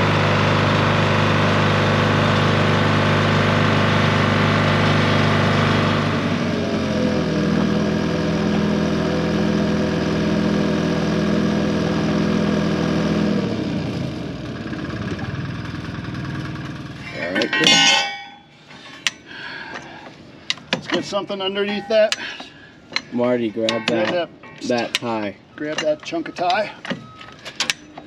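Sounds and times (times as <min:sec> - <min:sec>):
engine running: 0:00.0 - 0:21.0.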